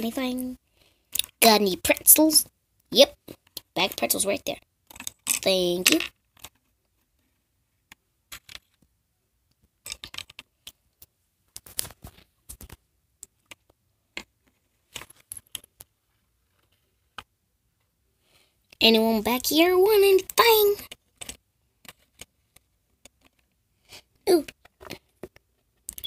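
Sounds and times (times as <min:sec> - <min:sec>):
small objects clicking and rustling: 0:04.8 - 0:08.9, 0:09.5 - 0:17.3, 0:20.8 - 0:23.6.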